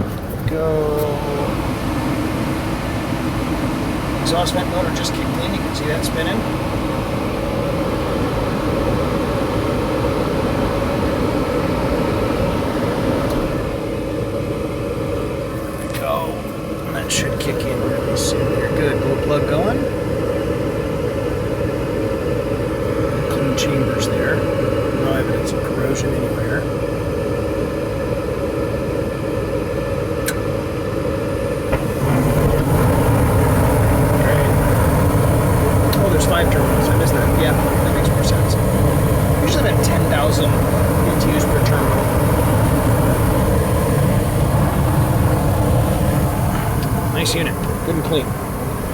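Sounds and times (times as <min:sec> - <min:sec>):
burner rumble: 0:00.0 - 0:48.9
furnace vent motor humming: 0:00.0 - 0:48.9.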